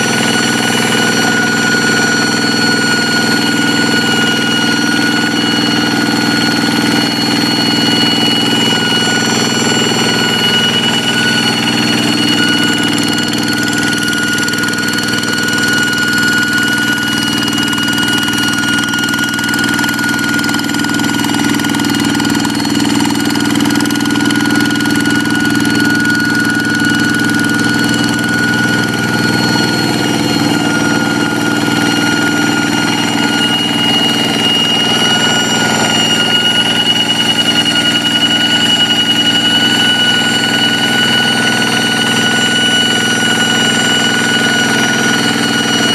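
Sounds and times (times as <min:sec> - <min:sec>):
diesel engine clattering with whine: 0:00.0 - 0:45.9.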